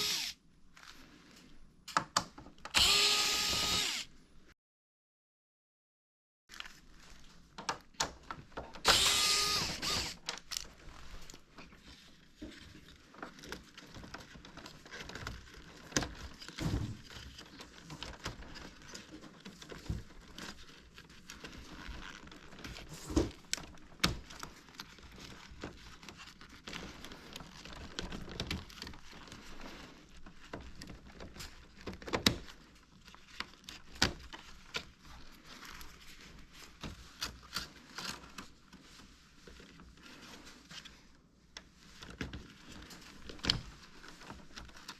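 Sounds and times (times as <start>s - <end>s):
loud rasping burst: 2.8s - 4.1s, 8.9s - 10.2s
plastic parts clicking and knocking: 7.5s - 11.4s, 30.4s - 35.2s.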